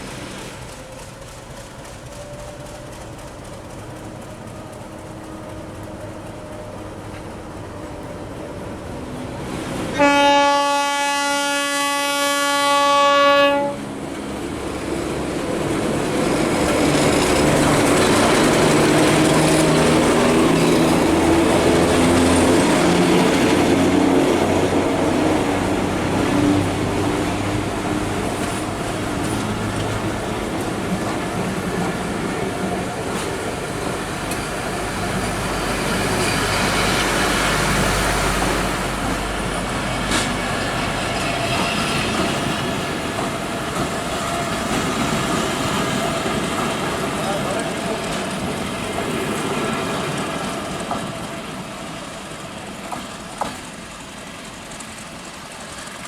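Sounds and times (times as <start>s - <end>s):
locomotive engine running: 0.0s - 9.8s, 13.8s - 56.0s
train wheels clattering over rails: 0.0s - 9.9s, 13.9s - 56.0s
locomotive horn blast: 9.9s - 14.0s.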